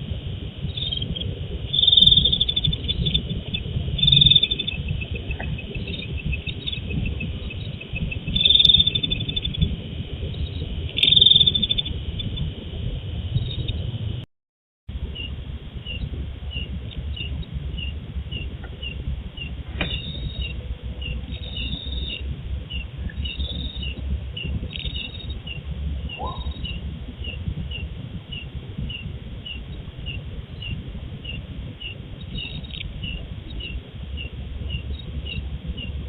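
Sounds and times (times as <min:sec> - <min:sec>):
steady low hiss: 0:00.0 - 0:14.2, 0:14.9 - 0:36.0
regular high chirping: 0:00.7 - 0:09.6, 0:24.7 - 0:25.4.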